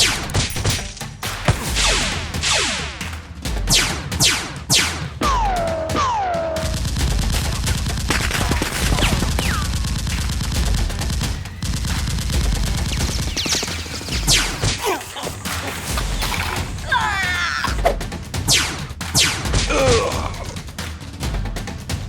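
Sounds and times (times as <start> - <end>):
music with low beat: 0.0 - 22.0
automatic gunfire: 6.6 - 14.8.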